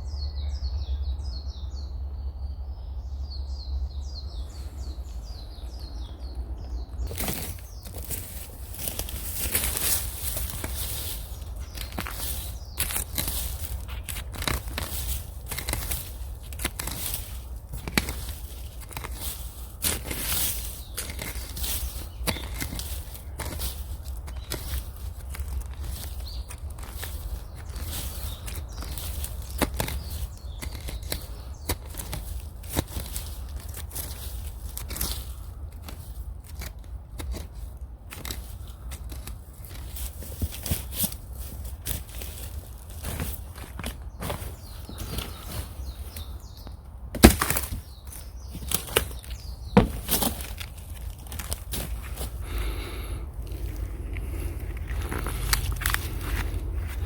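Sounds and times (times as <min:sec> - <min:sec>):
dry leaves rustling and crunching: 0:07.0 - 0:57.0
steady low rumble: 0:49.4 - 0:57.0.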